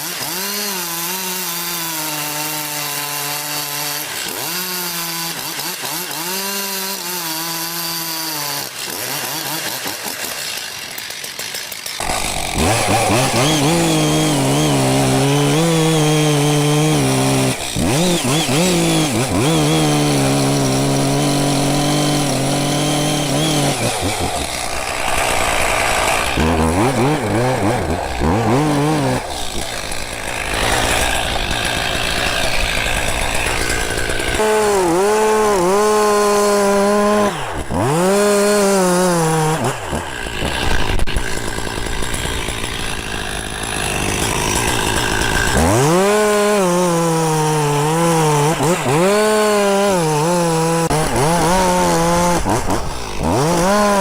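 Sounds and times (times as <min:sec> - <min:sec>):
chainsaw cutting wood: 0:00.0 - 0:54.0.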